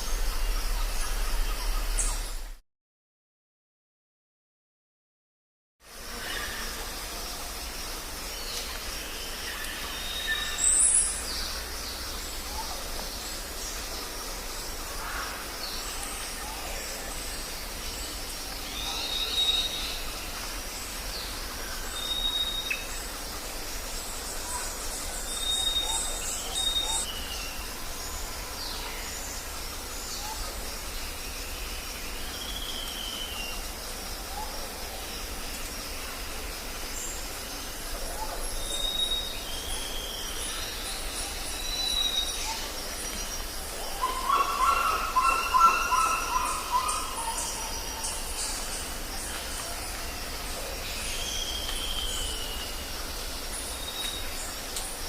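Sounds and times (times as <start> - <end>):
background hiss: 5.8 - 55.0
birds calling: 37.0 - 54.8
bird trill: 44.0 - 48.0.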